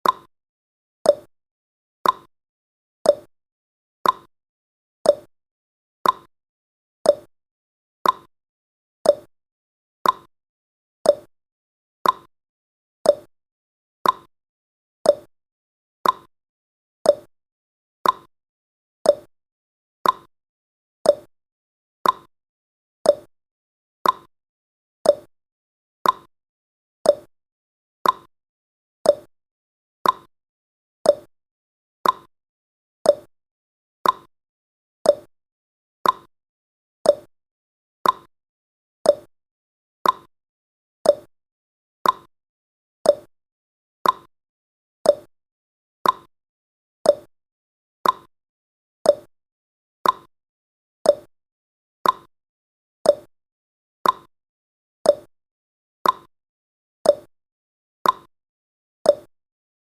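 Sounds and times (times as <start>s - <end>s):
clock ticking: 38.0s - 38.3s, 44.0s - 44.3s, 48.0s - 48.3s.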